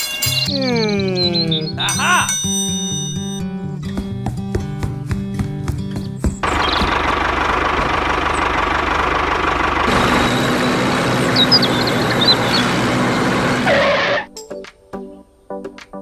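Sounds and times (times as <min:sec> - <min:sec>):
bird chirps: 0:00.0 - 0:02.3, 0:06.4 - 0:07.0, 0:09.9 - 0:13.9
engine running: 0:06.3 - 0:14.3.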